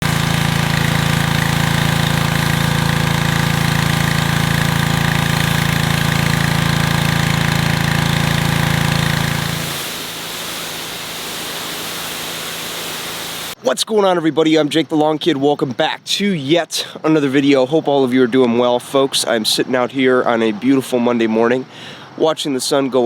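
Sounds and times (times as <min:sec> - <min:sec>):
small gas engine running: 0:00.0 - 0:13.6
steady hiss: 0:09.3 - 0:13.6.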